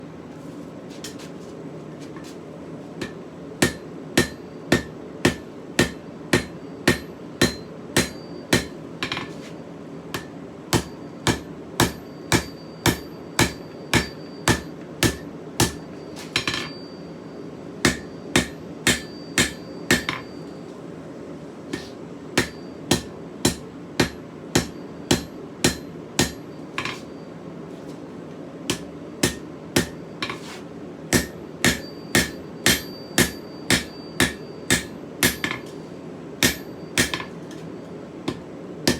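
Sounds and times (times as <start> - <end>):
hammer striking steel on anvil: 3.0 - 9.4, 10.1 - 16.9, 17.8 - 20.5, 21.7 - 27.2, 28.7 - 35.8, 36.4 - 37.6, 38.3 - 38.9.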